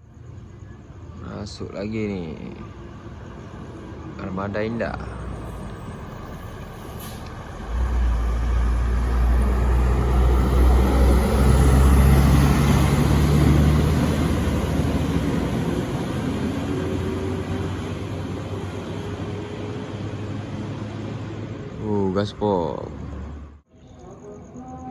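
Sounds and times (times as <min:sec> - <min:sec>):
bus diesel engine passing: 0:00.0 - 0:24.9.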